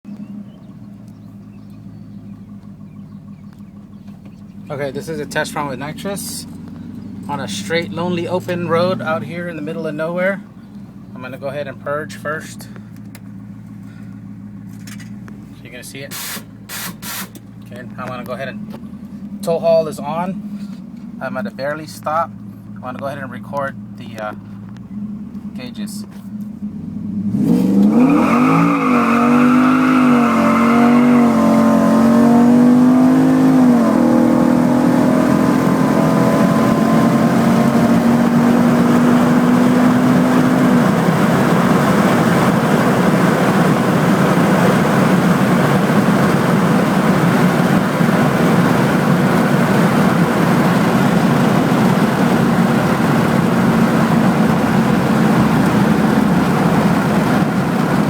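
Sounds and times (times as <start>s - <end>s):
road and wind noise: 0.0s - 58.0s
truck engine accelerating hard: 0.1s - 58.0s.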